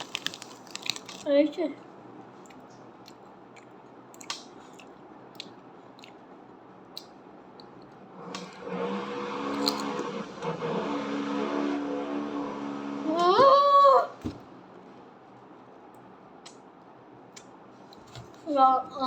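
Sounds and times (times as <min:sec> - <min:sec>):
crunchy snack chewing: 0:00.0 - 0:01.3, 0:09.6 - 0:09.9
steady hum: 0:00.0 - 0:19.0.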